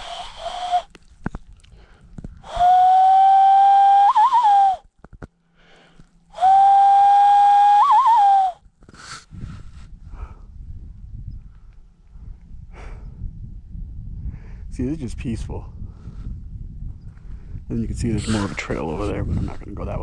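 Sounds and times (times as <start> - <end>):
person whistling through hands: 2.5 - 4.8, 6.4 - 8.6.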